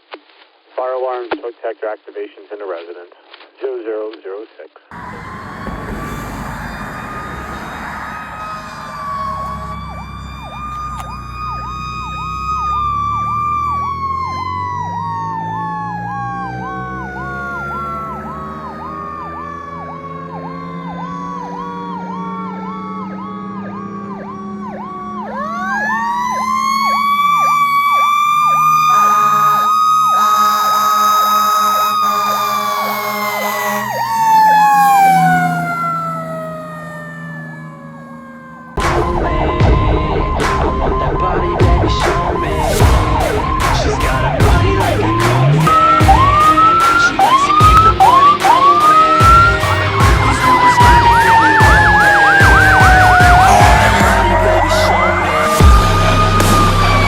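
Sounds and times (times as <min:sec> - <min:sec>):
horn blasts: 0:04.9 - 0:11.1, 0:28.8 - 0:35.8, 0:38.8 - 0:57.0
truck diesel engine running: 0:04.9 - 0:14.2, 0:14.8 - 0:57.0
electronic siren yelping: 0:04.9 - 0:57.0
mechanical siren wailing: 0:04.9 - 0:57.0.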